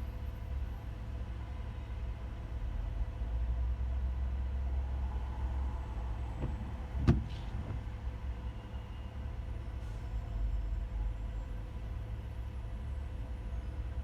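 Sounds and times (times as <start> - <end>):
car driving rumble: 5.1 - 8.2.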